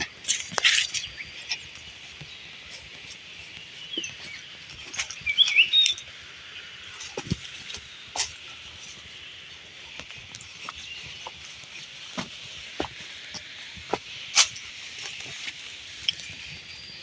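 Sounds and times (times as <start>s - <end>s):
high hiss of outdoor ambience: 0.0s - 17.0s
small birds chirping: 0.0s - 17.0s.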